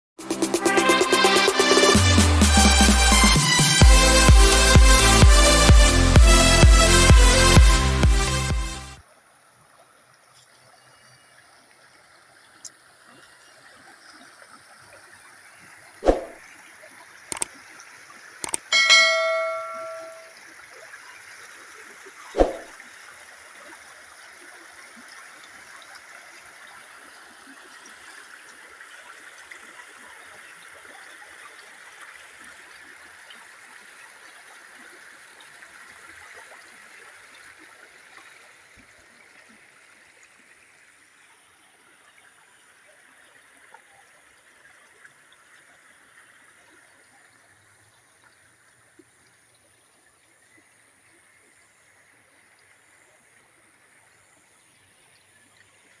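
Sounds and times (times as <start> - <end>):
floodwater rushing: 15.8 - 16.4, 22.3 - 22.8.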